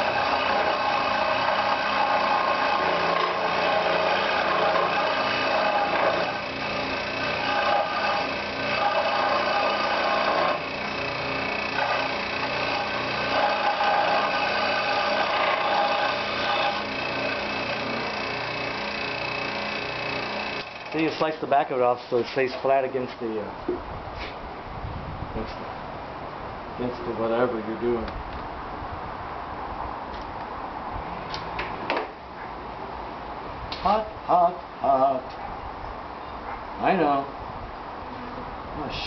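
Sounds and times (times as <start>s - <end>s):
power saw cutting log: 0.0s - 22.0s.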